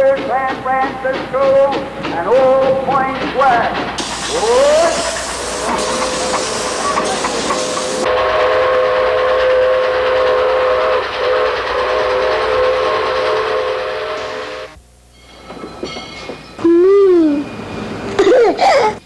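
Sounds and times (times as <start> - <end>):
steam hiss: 4.0 - 14.8
train whistle chord: 4.0 - 14.8.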